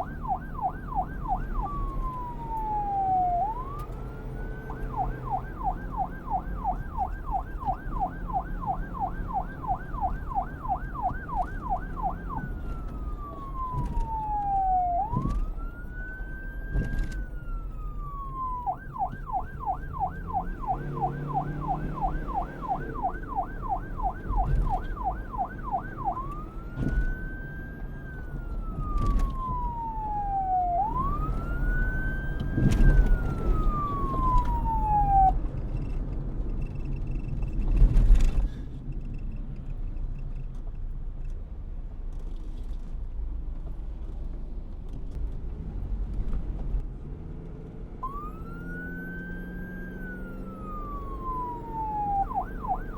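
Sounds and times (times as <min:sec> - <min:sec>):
police siren yelping and wailing: 0:00.0 - 0:35.4, 0:48.0 - 0:52.9.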